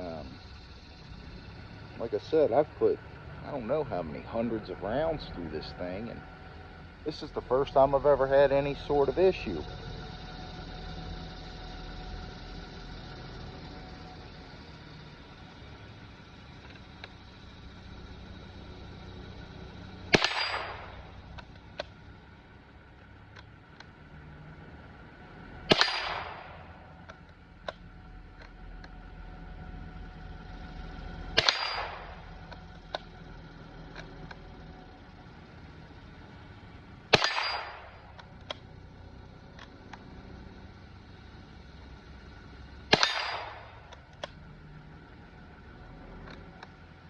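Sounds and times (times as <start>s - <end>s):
rifle shots with ringing tail: 20.1s - 21.2s, 25.6s - 26.9s, 31.3s - 32.4s, 37.1s - 38.2s, 42.9s - 43.9s.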